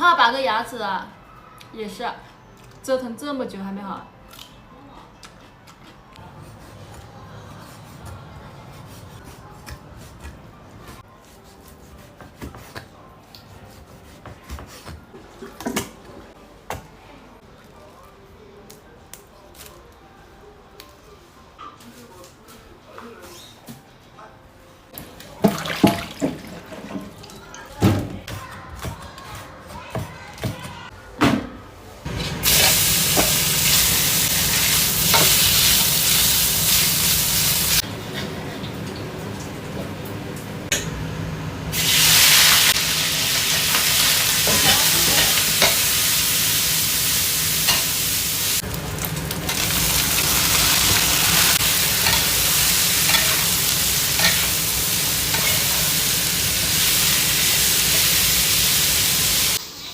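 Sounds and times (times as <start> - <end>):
food sizzling in hot oil: 32.3 - 37.8, 41.7 - 59.6.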